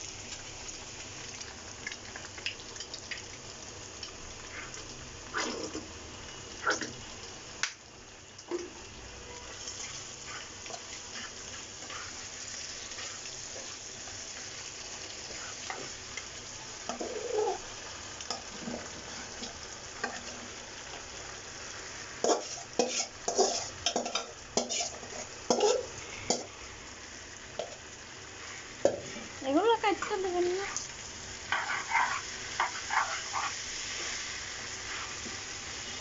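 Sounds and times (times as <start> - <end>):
food sizzling in a pan: 0.0 - 36.0
utensil scraping a pan: 22.2 - 25.9, 31.5 - 34.1.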